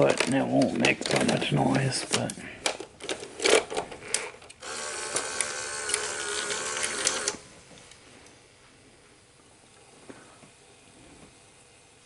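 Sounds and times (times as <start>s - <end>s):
video deck mechanism whirring: 0.0s - 8.0s
mechanism clicks: 2.1s - 8.0s.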